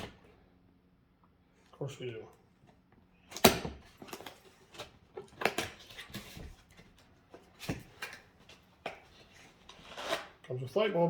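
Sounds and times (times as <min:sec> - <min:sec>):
packaging rustling and scraping: 0:03.9 - 0:10.5.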